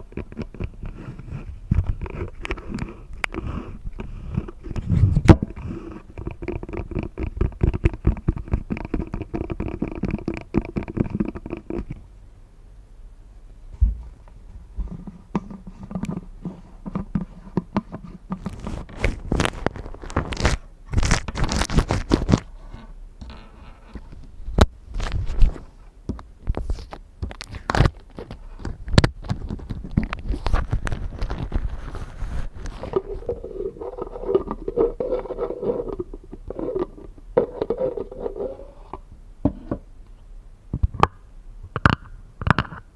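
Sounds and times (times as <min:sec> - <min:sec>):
scratching on glass: 0:14.8 - 0:24.2, 0:29.5 - 0:39.8.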